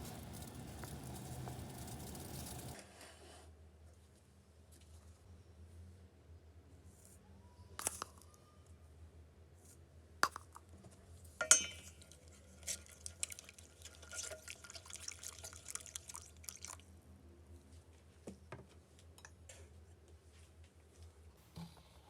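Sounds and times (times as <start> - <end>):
glass clinking: 11.4 - 12.1
liquid trickling into a glass: 12.0 - 16.9.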